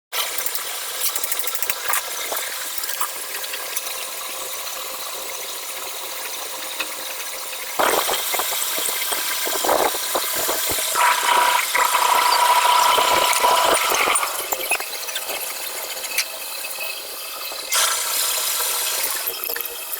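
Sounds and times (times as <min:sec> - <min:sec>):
homemade grinder running: 0:07.7 - 0:16.0, 0:17.6 - 0:19.9.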